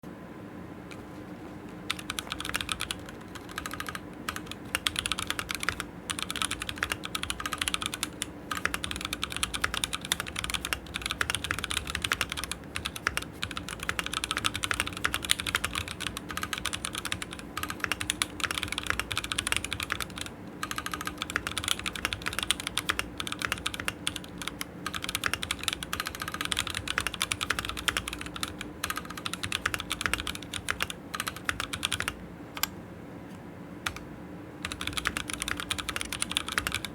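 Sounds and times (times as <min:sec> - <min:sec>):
fast typing on mechanical keyboard: 0:01.8 - 0:32.7, 0:33.8 - 0:34.0, 0:34.6 - 0:36.9.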